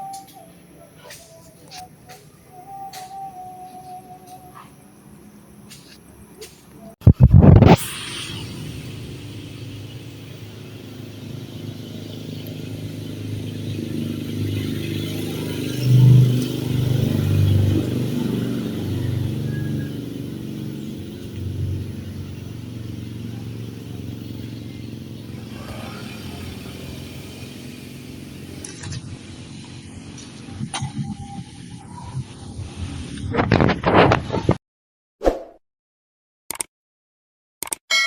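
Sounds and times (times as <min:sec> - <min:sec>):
vehicle engine running: 0:04.3 - 0:33.4.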